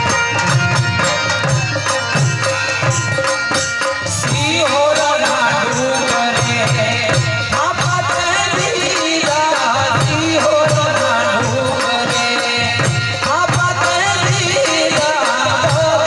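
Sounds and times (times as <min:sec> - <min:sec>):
ornamented melody line: 0:00.0 - 0:06.0
harmonium chords: 0:00.0 - 0:16.0
rattling percussion: 0:00.0 - 0:16.0.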